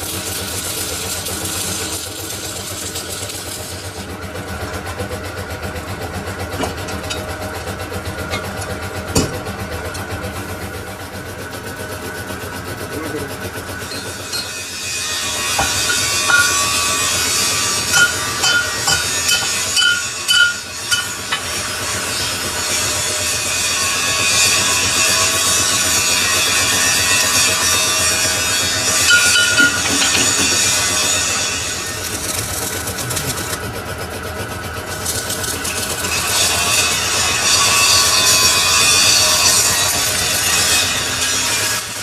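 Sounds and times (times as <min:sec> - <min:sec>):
lathe tool hissing on metal: 0:00.0 - 0:04.5, 0:10.2 - 0:42.0
pulsing machine hum: 0:00.0 - 0:42.0
high-pitched squeals: 0:13.8 - 0:24.6.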